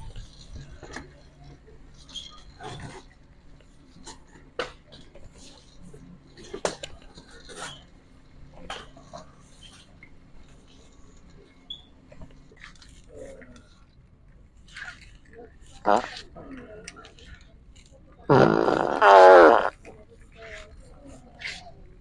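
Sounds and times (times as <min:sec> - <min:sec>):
faint distant voices: 0:00.0 - 0:22.0.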